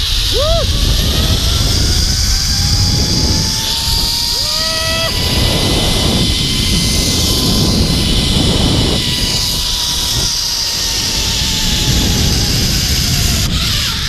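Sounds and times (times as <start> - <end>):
thin whine: 0.0 - 14.0
wind over microphone: 0.0 - 14.0
zip line pulleys on cable: 0.0 - 14.0.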